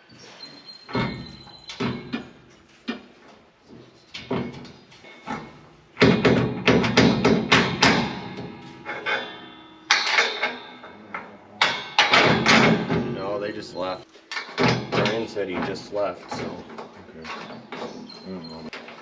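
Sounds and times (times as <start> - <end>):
metal tools knocking on metal: 4.2 - 13.2.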